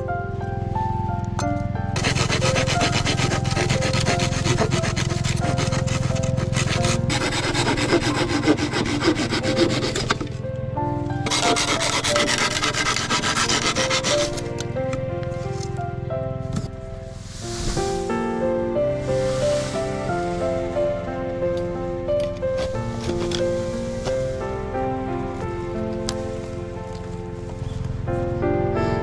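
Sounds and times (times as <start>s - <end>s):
soft background music: 0.0s - 29.0s
tool rasping wood: 2.0s - 10.4s, 11.2s - 14.6s.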